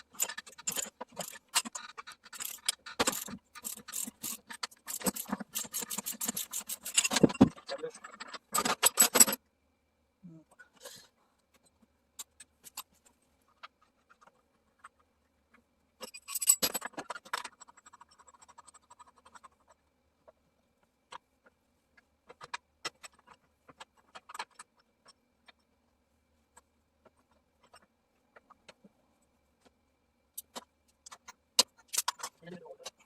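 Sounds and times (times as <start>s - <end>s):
metal clinks and knocks: 0.0s - 9.4s, 16.0s - 19.7s, 30.4s - 33.0s
metal tools clattering: 0.0s - 9.4s, 16.0s - 18.5s.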